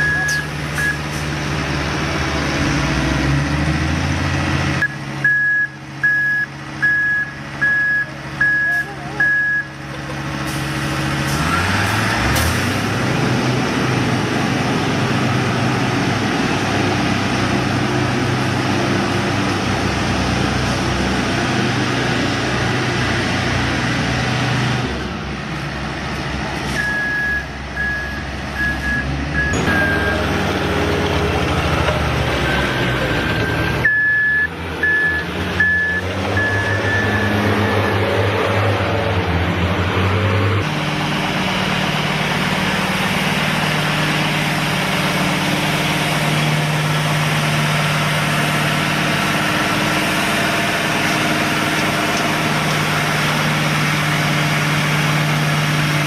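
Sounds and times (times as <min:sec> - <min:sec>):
reversing alarm beeps: 0:00.0 - 0:01.0, 0:04.8 - 0:09.8, 0:26.8 - 0:30.3, 0:33.4 - 0:38.0
construction machinery engine hum: 0:00.0 - 0:56.0.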